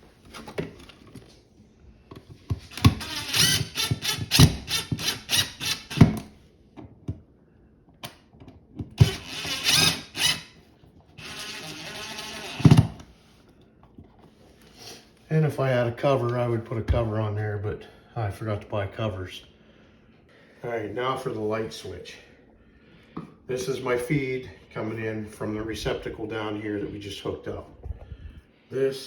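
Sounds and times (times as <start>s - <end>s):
power drill driving screws: 2.7s - 6.2s, 9.0s - 10.6s, 11.2s - 13.0s.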